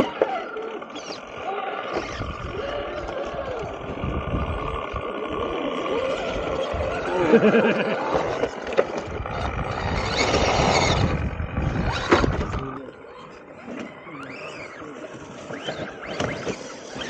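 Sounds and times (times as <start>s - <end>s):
small electric motor and gears: 0.0s - 17.0s
tyres scrabbling on rock: 8.0s - 12.8s, 13.6s - 17.0s.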